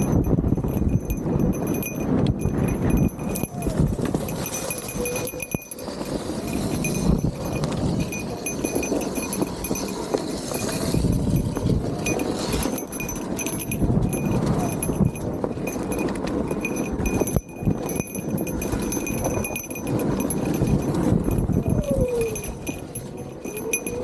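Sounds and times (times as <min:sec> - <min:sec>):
low rumble on microphone: 0:13.0 - 0:23.5.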